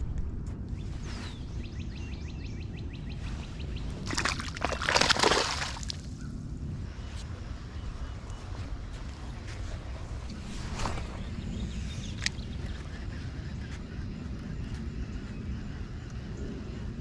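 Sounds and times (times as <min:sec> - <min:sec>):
wind on microphone: 0:00.0 - 0:17.0
water sloshing and splashing: 0:03.9 - 0:06.1.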